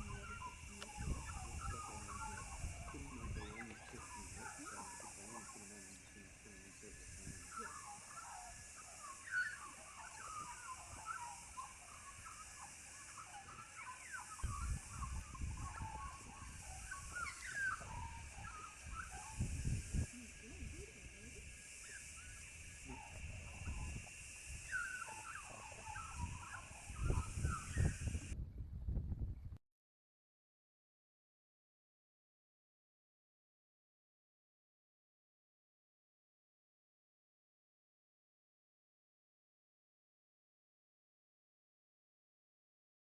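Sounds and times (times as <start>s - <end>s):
wind buffeting microphone: 0.0s - 5.3s, 14.3s - 29.6s
birds chattering: 0.0s - 28.4s
high background hiss: 0.0s - 28.4s.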